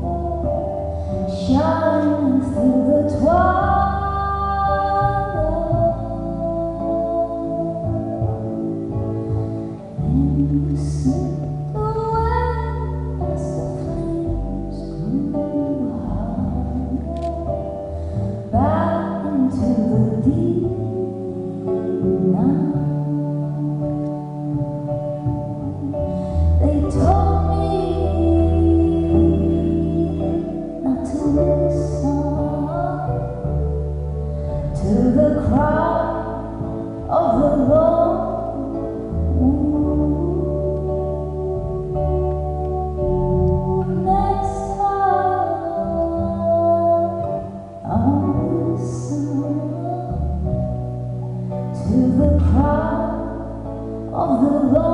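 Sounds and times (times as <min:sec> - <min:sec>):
bass: 0:00.0 - 0:54.9
plucked guitar: 0:00.0 - 0:54.9
sustained instrumental chords: 0:00.0 - 0:54.9
person singing: 0:09.8 - 0:50.8, 0:54.2 - 0:54.9.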